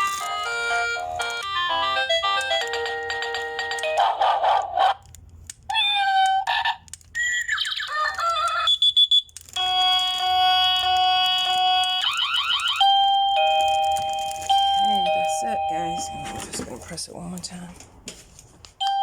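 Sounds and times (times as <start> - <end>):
doorbell electronic ringtones: 9.7 - 16.5.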